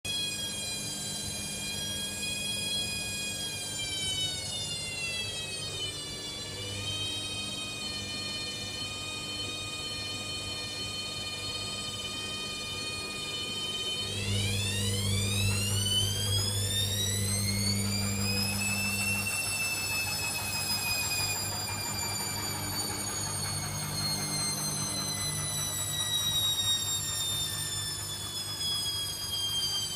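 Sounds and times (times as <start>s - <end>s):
washing machine high-pitched whine: 0.0s - 29.9s
low hum: 13.9s - 28.2s.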